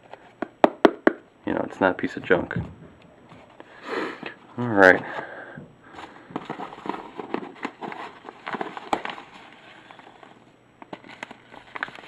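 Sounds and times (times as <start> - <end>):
packaging crackling and clicking: 10.8 - 12.0.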